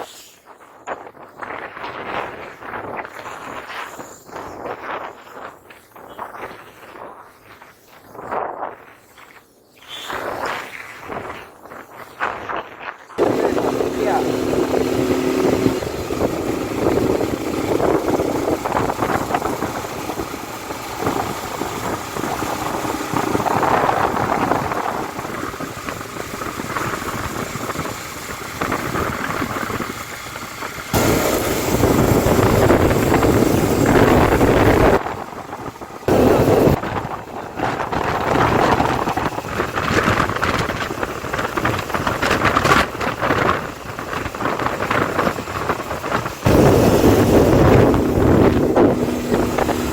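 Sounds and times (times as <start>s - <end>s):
wind buffeting microphone: 10.1s - 49.9s
motorcycle engine: 13.2s - 49.9s.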